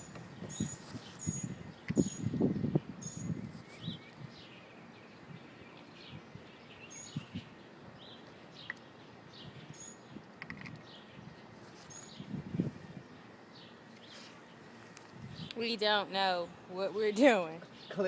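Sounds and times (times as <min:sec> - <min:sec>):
outdoor background noise: 0:00.0 - 0:18.0
songbirds chirping: 0:00.0 - 0:18.0
thin bird whistle: 0:03.0 - 0:04.2.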